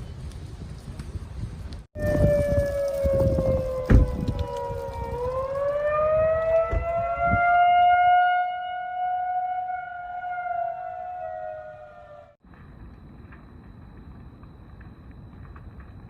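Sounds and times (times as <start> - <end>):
siren wailing: 2.0 - 12.4.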